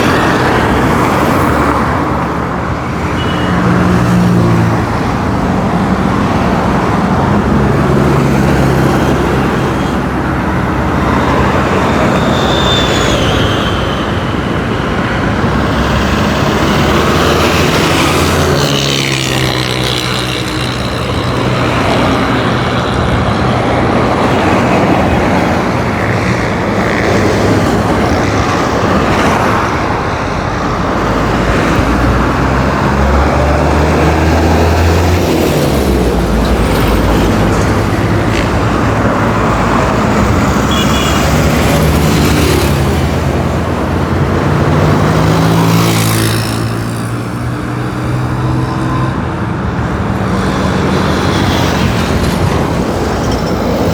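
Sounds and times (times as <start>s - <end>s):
vehicles driving past: 0.0s - 53.9s.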